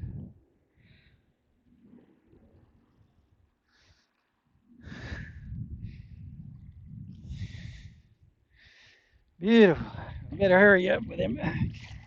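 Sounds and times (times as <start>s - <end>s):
man breathing heavily: 4.8s - 6.4s, 7.2s - 10.3s
low microphone rumble: 4.9s - 8.2s, 9.6s - 12.0s.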